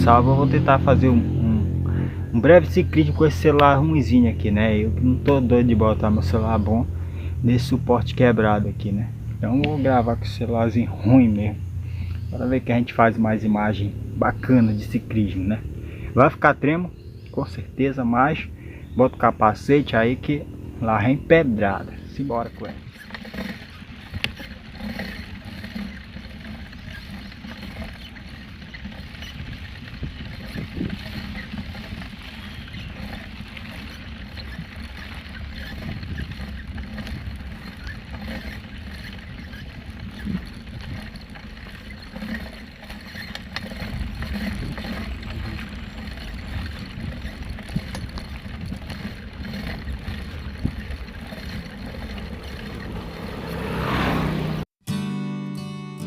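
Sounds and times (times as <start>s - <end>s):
wind and tyre rumble: 0.0s - 54.7s
bicycle knocks and rattles: 22.8s - 54.0s.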